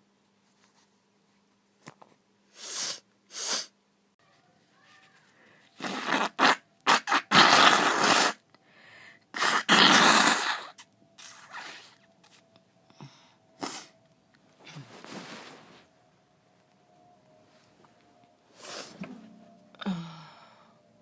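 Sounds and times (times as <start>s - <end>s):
person blowing nose: 2.5s - 3.8s, 5.7s - 8.4s, 9.4s - 12.1s, 13.6s - 14.0s.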